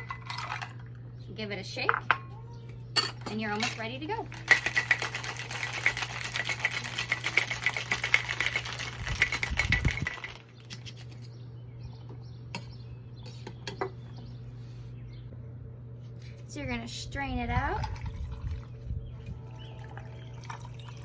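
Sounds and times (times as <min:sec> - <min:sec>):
ice rattling in cocktail shaker: 0:00.0 - 0:00.9, 0:03.6 - 0:10.6, 0:19.7 - 0:21.0.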